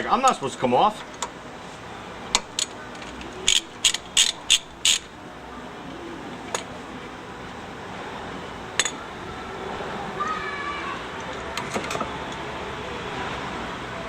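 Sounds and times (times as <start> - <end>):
ratchet wrench clicking: 3.4 - 5.1.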